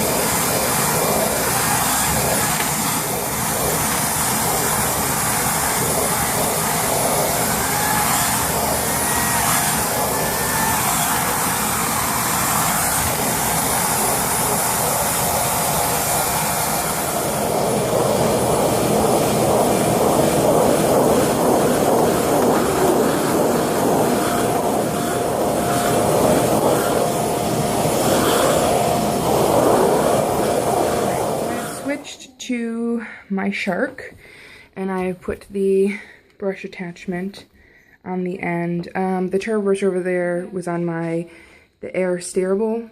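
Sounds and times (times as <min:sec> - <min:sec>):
vacuum cleaner running: 0:00.0 - 0:32.3.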